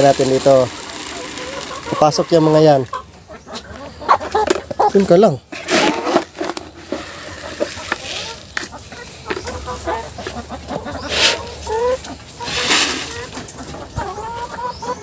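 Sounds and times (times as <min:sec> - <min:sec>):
chickens clucking: 0:00.0 - 0:15.0
rustling noise: 0:05.5 - 0:13.8.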